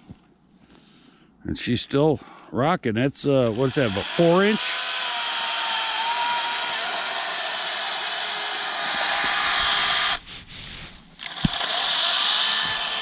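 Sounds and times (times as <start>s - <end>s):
electric chainsaw cutting wood: 3.4s - 10.2s, 11.2s - 13.0s.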